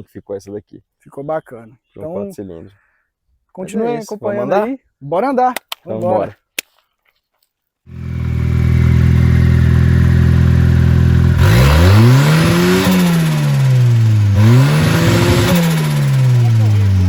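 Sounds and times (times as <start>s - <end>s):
car engine revving: 7.9s - 17.0s.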